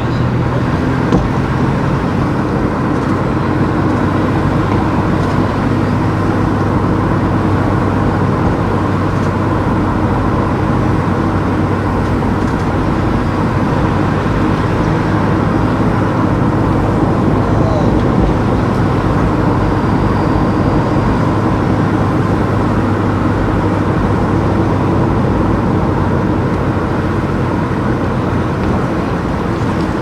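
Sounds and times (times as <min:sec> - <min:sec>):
car engine and tyre noise: 0:00.0 - 0:30.0.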